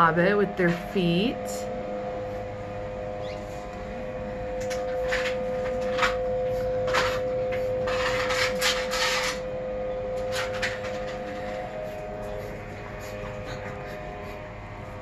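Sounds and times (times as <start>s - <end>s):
steady hum: 0.0s - 15.0s
rubbing and scraping: 4.6s - 9.4s.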